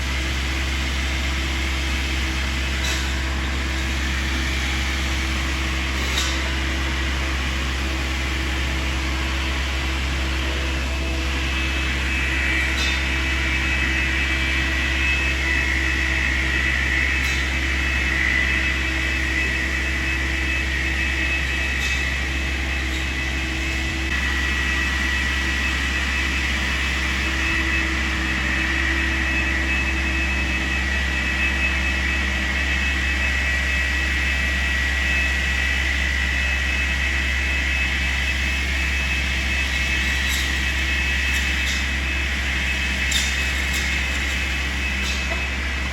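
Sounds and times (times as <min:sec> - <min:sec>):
distant engine rumble with high whine: 0:00.0 - 0:45.9.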